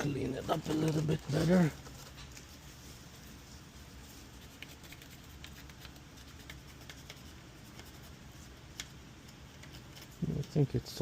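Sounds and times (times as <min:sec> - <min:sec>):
low steady hum: 0:00.0 - 0:11.0
scratching on circuit board: 0:04.2 - 0:10.7.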